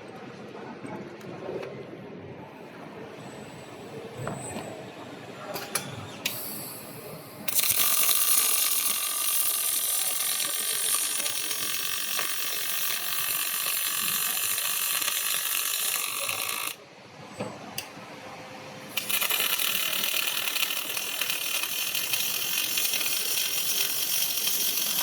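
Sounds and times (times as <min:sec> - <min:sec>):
welding arc hissing: 0:06.3 - 0:16.8, 0:18.9 - 0:25.0.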